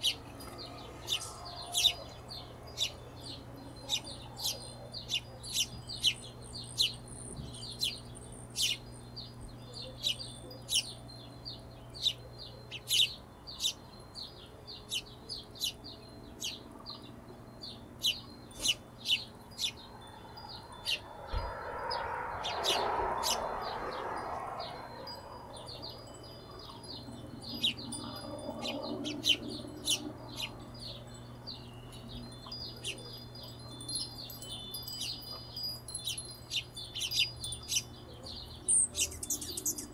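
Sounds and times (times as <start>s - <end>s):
hummingbirds chirping: 0.0s - 39.9s
soft rushing noise: 20.9s - 25.6s.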